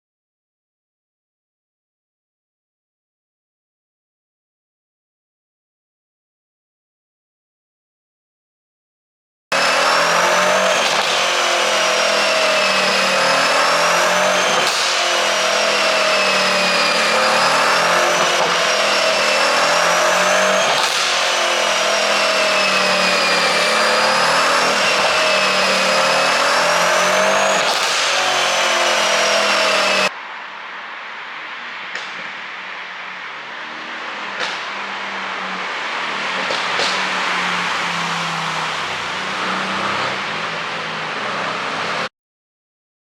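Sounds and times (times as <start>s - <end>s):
car engine at high revs: 9.5s - 30.2s, 31.5s - 42.1s.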